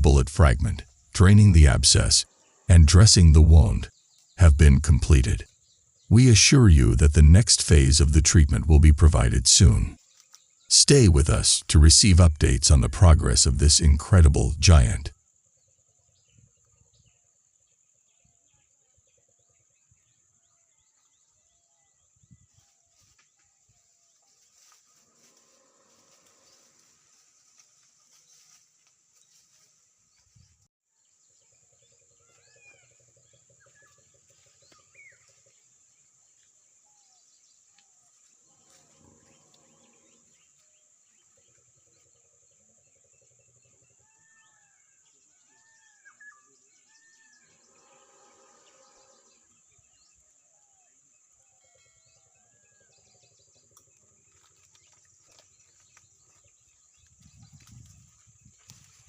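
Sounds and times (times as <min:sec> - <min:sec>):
birds chirping: 0:00.0 - 0:15.1, 0:31.2 - 0:59.0.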